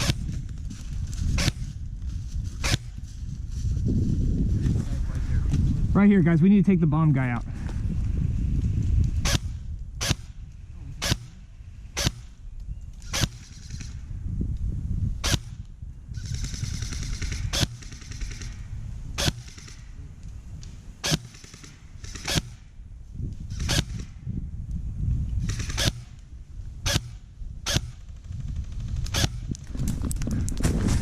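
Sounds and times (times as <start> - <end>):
airsoft gun shots: 0.0 - 0.3, 2.6 - 2.9, 9.2 - 10.4, 11.0 - 11.4, 12.0 - 12.4, 13.0 - 14.0, 15.2 - 15.6, 16.2 - 18.6, 19.2 - 19.8, 21.0 - 22.7, 23.5 - 24.1, 25.4 - 26.2, 26.9 - 28.1.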